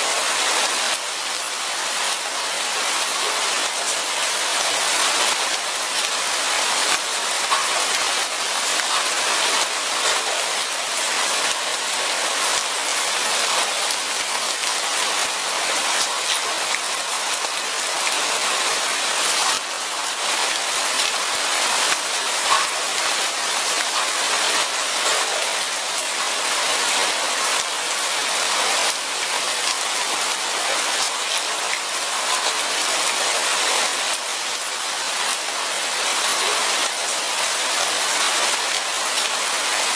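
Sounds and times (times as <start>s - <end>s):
rain pattering on leaves: 0.0s - 39.9s
sharp raindrop ticks: 6.9s - 8.0s, 21.9s - 23.1s.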